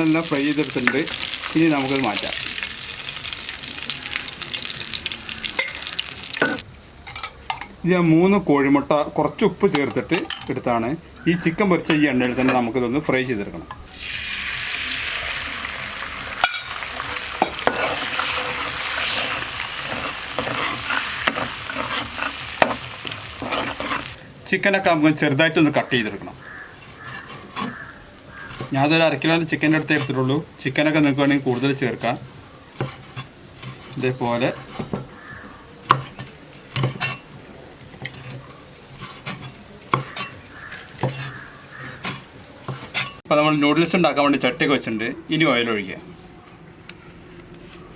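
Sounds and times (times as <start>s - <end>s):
eggs sizzling in oil: 0.0s - 6.7s, 13.9s - 43.3s.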